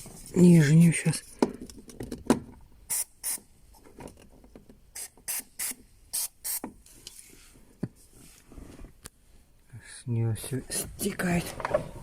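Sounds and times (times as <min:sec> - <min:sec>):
aerosol spray can hissing: 0:02.9 - 0:03.4, 0:05.0 - 0:06.6.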